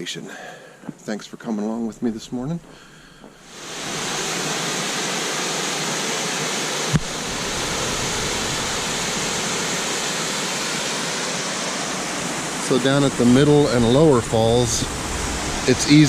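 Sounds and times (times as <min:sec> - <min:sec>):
waterfall rushing: 0:03.5 - 0:16.0.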